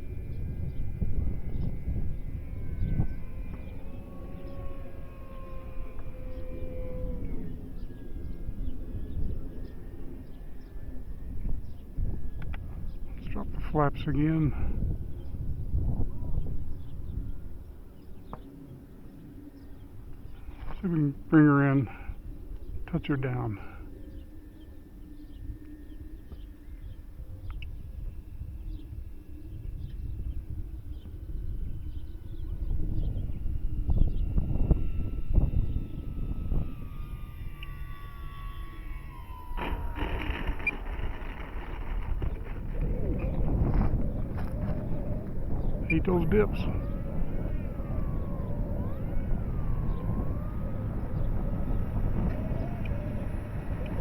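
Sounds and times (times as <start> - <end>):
electric motor whine: 0.0 - 54.0
low rumble: 29.6 - 54.0.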